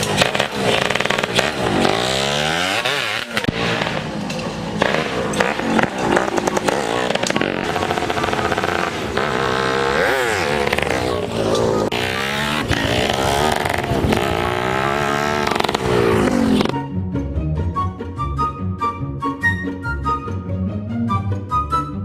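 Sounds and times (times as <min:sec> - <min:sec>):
motorcycle engine revving: 0:00.0 - 0:16.8.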